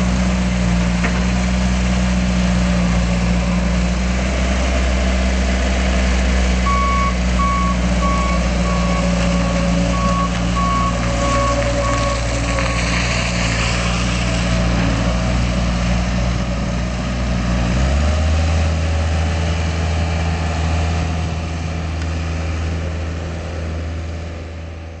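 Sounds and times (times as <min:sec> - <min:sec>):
diesel engine running: 0:00.0 - 0:25.0
backup alarm beeping: 0:06.7 - 0:12.2.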